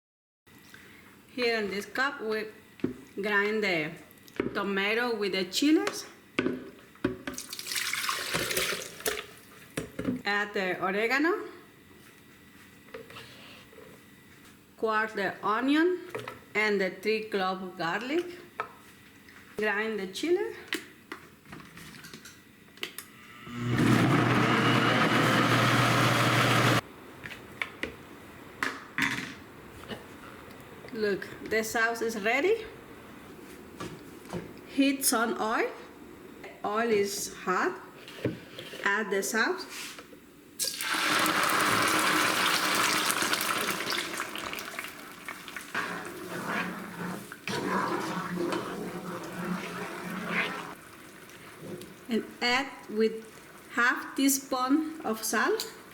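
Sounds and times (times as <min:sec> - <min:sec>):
electric blender grinding: 0:23.4 - 0:26.8, 0:40.8 - 0:50.9
sauce hissing in hot oil: 0:40.7 - 0:46.2
frying sizzle with spatters: 0:40.8 - 0:45.8.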